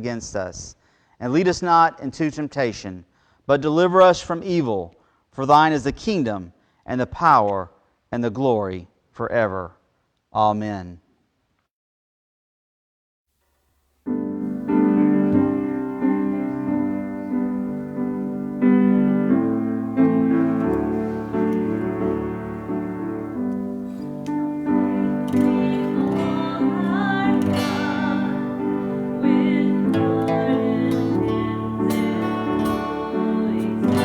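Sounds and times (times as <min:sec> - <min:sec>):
slow piano chords: 0:14.1 - 0:34.0.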